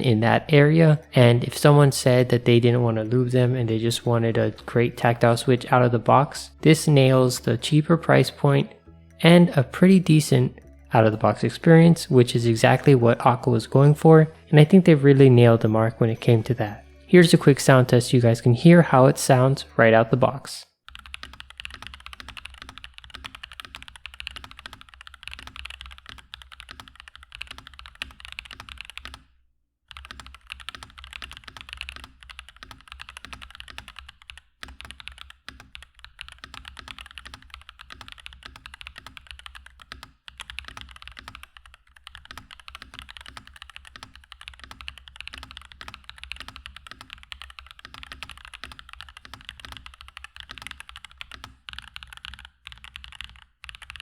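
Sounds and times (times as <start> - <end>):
typing on mechanical keyboard: 20.9 - 29.2, 29.9 - 54.0.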